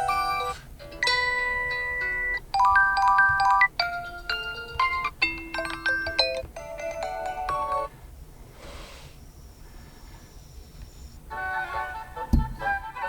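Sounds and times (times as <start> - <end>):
bright chiming alarm melody: 0.0 - 7.9.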